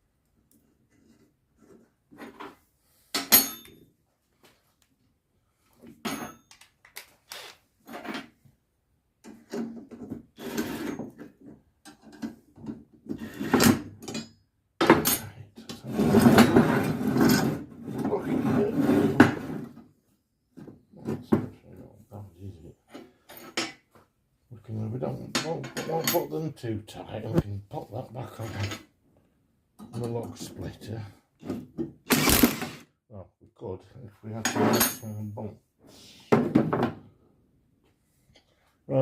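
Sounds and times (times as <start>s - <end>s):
metal tools knocking and clanking: 3.2s - 3.8s, 6.0s - 6.6s, 14.0s - 15.7s, 25.3s - 26.4s, 34.4s - 35.3s.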